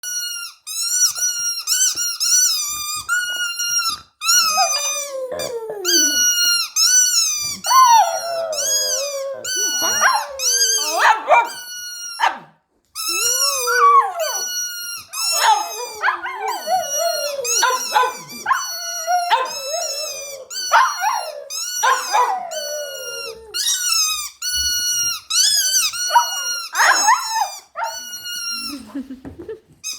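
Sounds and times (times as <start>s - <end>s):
dog howling and whining: 4.2s - 11.7s, 13.0s - 24.2s, 25.4s - 28.2s.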